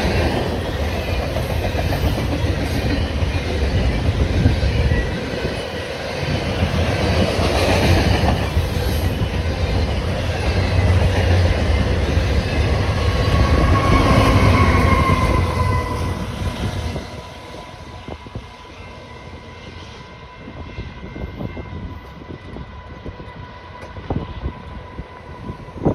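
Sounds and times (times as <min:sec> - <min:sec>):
freight train wheels rumbling: 0:00.0 - 0:25.9
high wheel squeal: 0:11.7 - 0:21.9.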